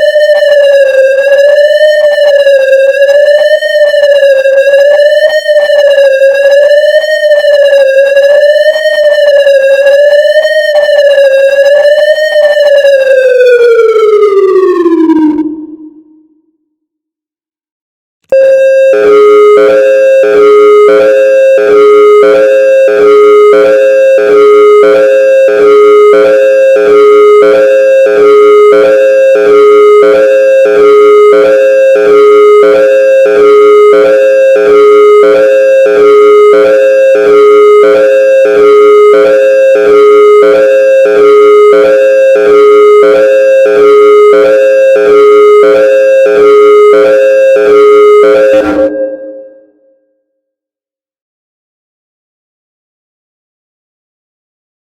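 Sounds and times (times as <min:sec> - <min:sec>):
warning siren hi-lo tone: 0:00.0 - 0:16.5, 0:18.3 - 0:50.1.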